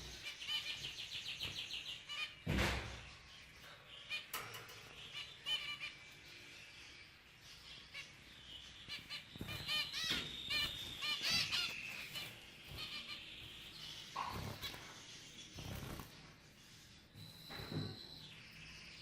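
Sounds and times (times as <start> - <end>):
finches calling: 5.0 - 6.5, 7.5 - 19.0.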